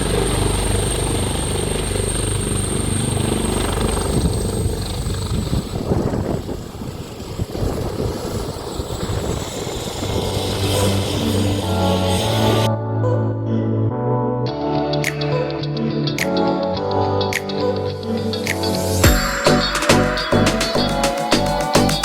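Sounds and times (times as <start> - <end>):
helicopter rotor drone: 0.0 - 12.7
high turbine whistle: 5.5 - 12.7, 18.0 - 22.0.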